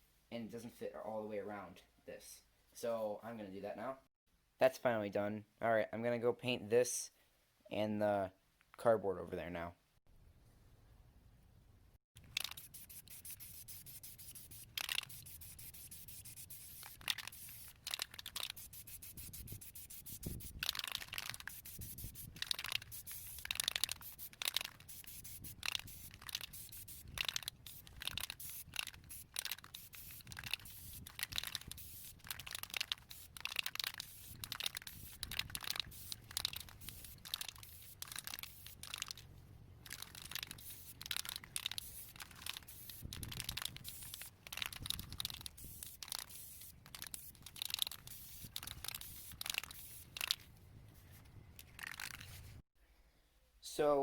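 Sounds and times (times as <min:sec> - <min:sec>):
spray paint can hissing: 0:12.2 - 0:39.2, 0:39.8 - 0:50.4.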